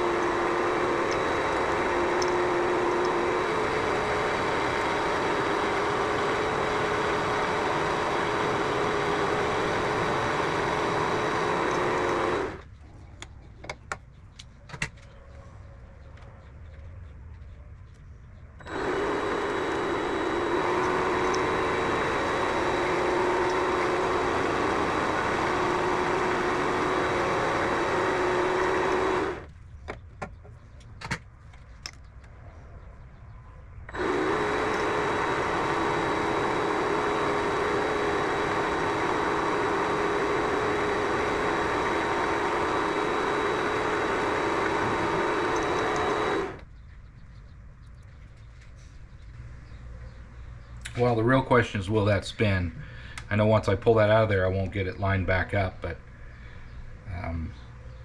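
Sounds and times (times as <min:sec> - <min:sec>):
lathe motor humming: 0:00.0 - 0:12.6, 0:18.6 - 0:29.5, 0:33.9 - 0:46.6
sharp clicks: 0:00.0 - 0:15.2, 0:33.8 - 0:47.0, 0:53.1 - 0:53.4.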